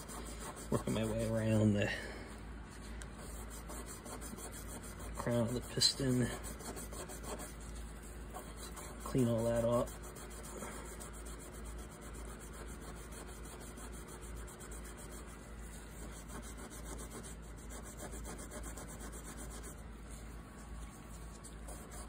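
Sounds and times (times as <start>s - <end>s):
pad scrubbing metal piston: 3.2s - 19.8s.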